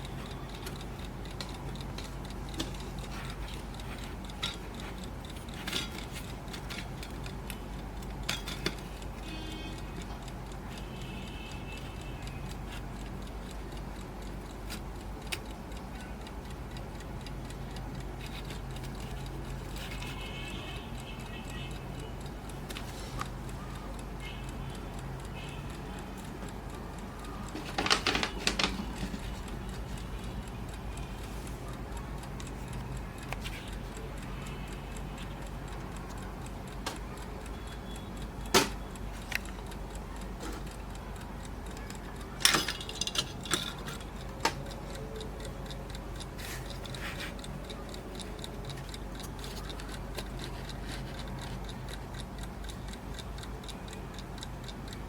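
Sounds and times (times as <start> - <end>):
alarm clock ticking: 0.0 - 55.0
sharp clicks and knocks: 27.4 - 30.0, 38.4 - 45.0.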